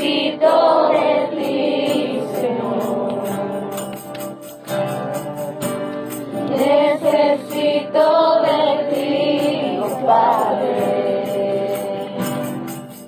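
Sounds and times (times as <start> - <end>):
voices singing together: 0.0 - 4.1, 5.1 - 12.9
instrumental accompaniment: 0.0 - 13.0.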